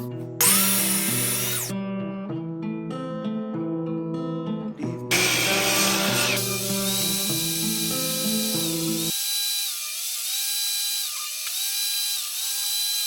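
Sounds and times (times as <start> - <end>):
background music: 0.0 - 9.1.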